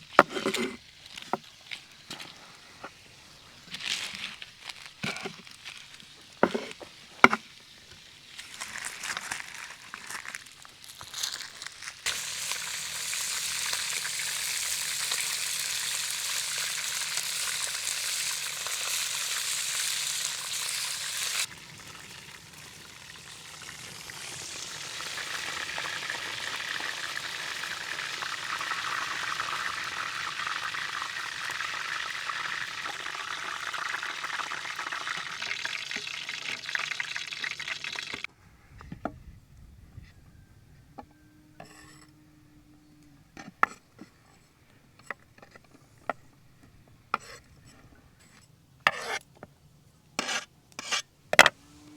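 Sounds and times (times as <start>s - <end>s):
food sizzling in oil: 12.0s - 38.3s.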